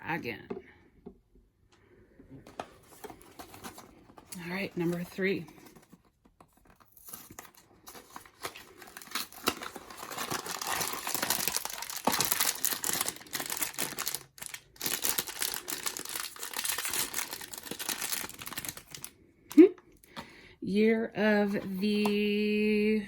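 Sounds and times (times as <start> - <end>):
packaging crinkling and tearing: 2.5 - 19.2.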